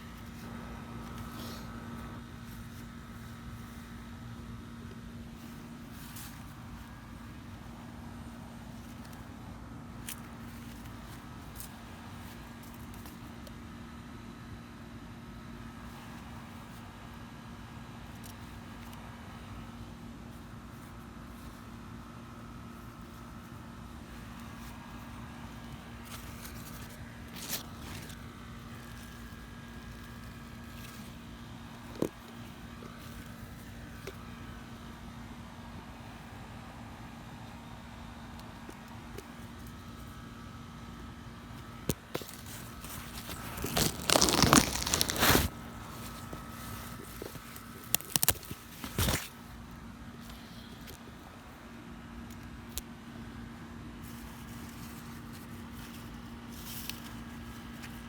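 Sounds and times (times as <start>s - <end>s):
low mechanical hum: 0.0s - 58.0s
rustling crinkling: 5.3s - 13.3s, 22.4s - 34.9s, 41.4s - 51.2s, 54.0s - 58.0s.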